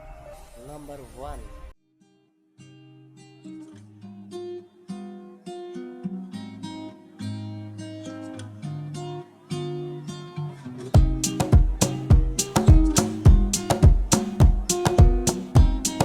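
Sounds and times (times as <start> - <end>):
acoustic guitar strumming: 2.0 - 16.0
bass notes: 11.0 - 16.0.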